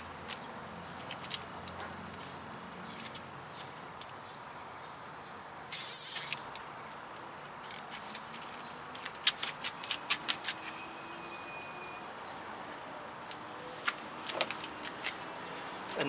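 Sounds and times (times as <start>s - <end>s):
zip tie ratchet clicks: 5.7s - 6.6s
zip tie ratcheting: 5.7s - 6.6s.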